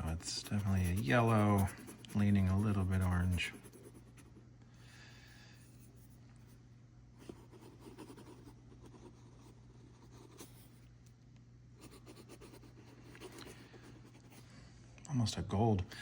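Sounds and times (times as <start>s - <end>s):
pen scratching on paper: 0.0s - 4.4s, 7.2s - 10.8s, 11.8s - 14.4s.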